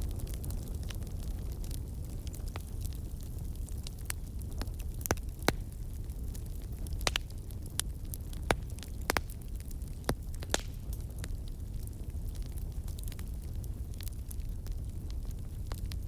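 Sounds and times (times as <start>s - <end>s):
log fire crackling: 0.0s - 16.0s
low rumble of flame: 0.0s - 16.0s
sharp pops and snaps: 7.0s - 7.3s, 8.4s - 9.4s, 10.0s - 11.0s.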